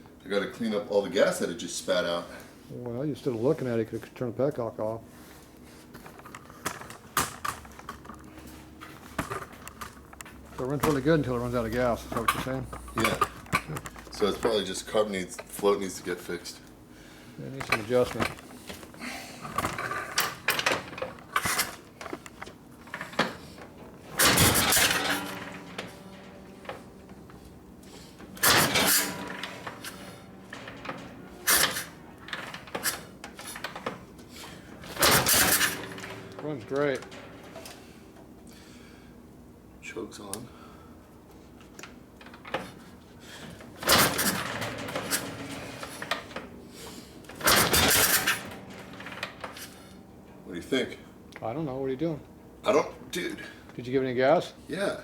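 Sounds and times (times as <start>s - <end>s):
motorcycle engine cranking and firing: 20.2s - 37.9s.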